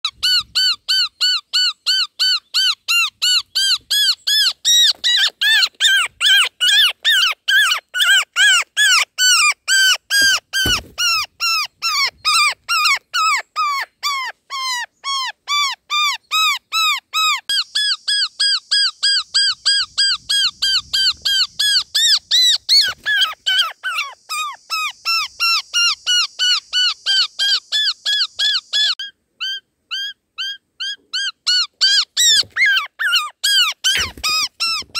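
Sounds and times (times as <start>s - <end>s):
higher-pitched bird calls: 0.0s - 34.9s.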